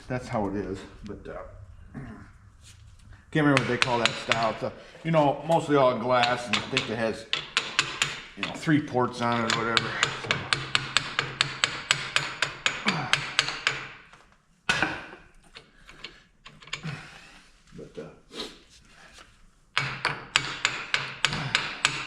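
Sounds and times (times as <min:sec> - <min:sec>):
rapid metal clicks: 0:05.6 - 0:14.0.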